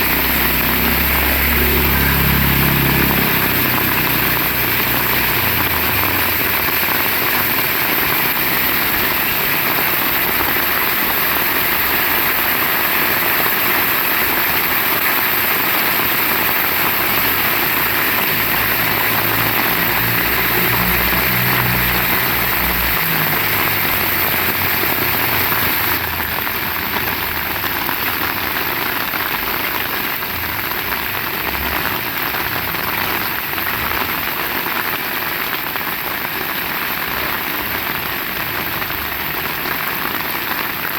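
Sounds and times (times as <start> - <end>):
low engine hum: 0.0 - 9.3
heavy rain falling: 0.0 - 40.9.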